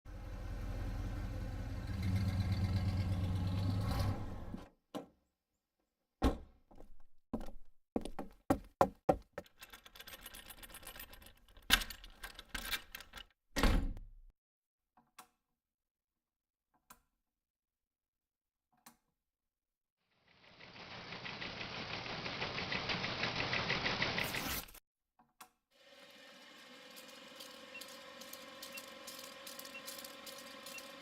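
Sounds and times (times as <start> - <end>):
knocks and thunks: 6.2 - 6.6
clatter: 20.3 - 24.4
motor-like hum: 25.8 - 31.0.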